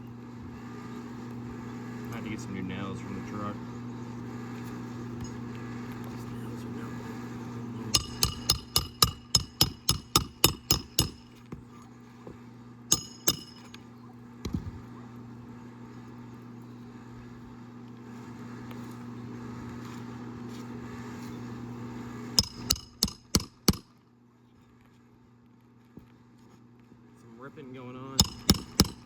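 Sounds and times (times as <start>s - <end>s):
steady low hum: 0.0s - 29.0s
hammer driving nails: 8.0s - 11.4s, 12.9s - 13.8s, 22.4s - 23.8s, 28.2s - 29.0s.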